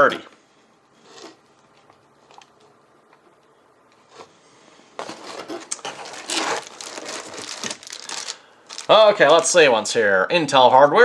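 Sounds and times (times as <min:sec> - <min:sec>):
plastic packaging rustling: 0:05.0 - 0:09.9.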